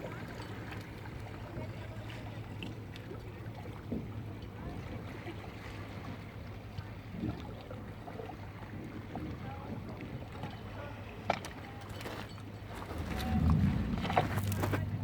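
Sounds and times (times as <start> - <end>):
water wash: 7.1 - 15.0.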